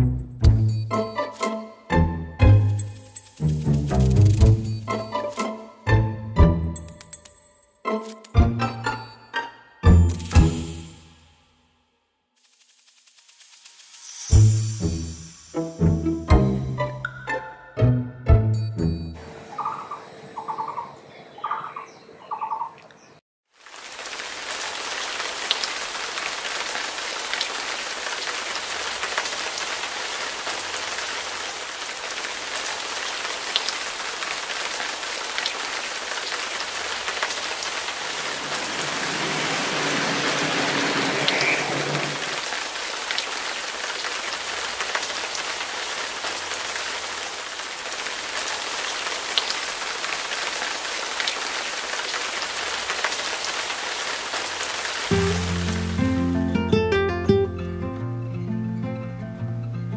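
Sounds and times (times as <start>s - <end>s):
steady rain: 2.4s - 5.6s, 23.5s - 56.5s.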